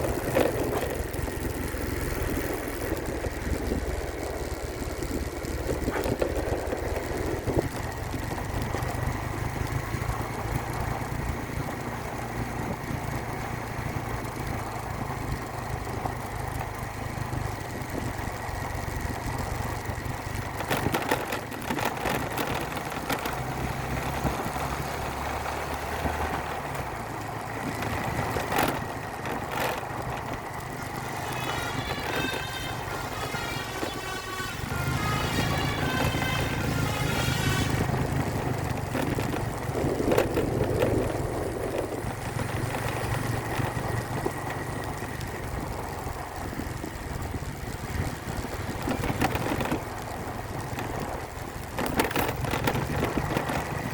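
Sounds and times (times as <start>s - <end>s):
vehicle engine running: 0.0s - 53.9s
melodic multi-tone bus horn: 30.8s - 38.7s.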